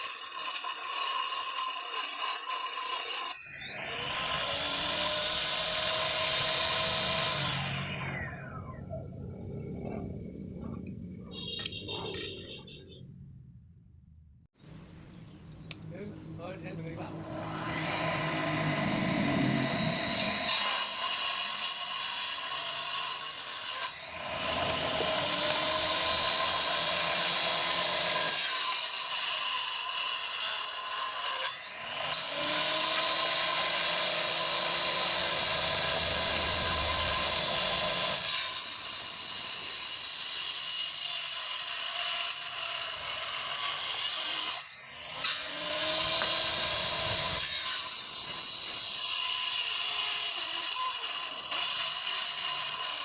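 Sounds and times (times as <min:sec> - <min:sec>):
saw blade whining cutting wood: 0:00.0 - 0:12.5, 0:16.6 - 0:53.0.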